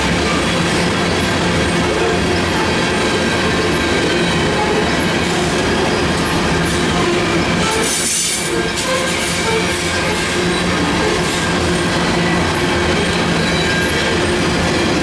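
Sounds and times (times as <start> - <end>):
train wheels rumbling on rails: 0.0 - 15.0.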